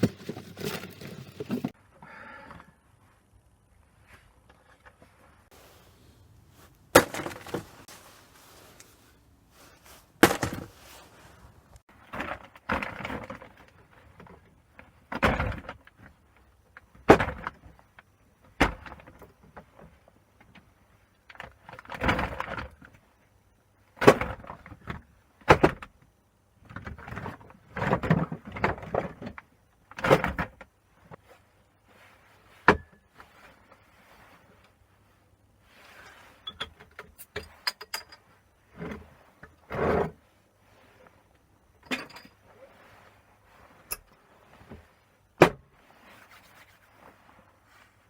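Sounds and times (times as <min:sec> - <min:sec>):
scraping and rattling: 0:00.0 - 0:01.8.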